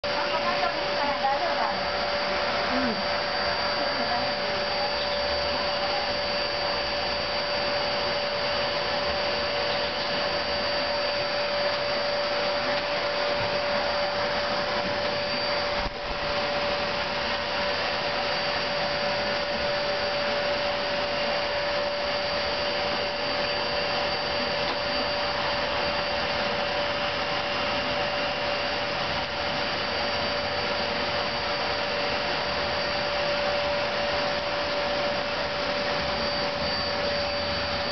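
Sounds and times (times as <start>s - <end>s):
vacuum cleaner running: 0.0s - 37.9s.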